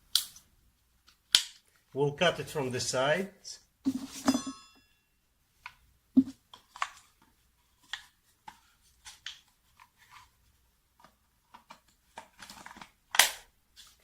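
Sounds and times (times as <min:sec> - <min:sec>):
brief metallic ring: 0:04.2 - 0:05.1.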